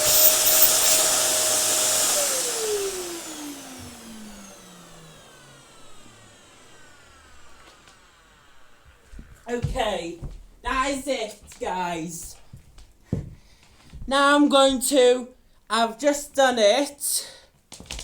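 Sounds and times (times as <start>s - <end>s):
vacuum cleaner whine: 0.0s - 9.8s.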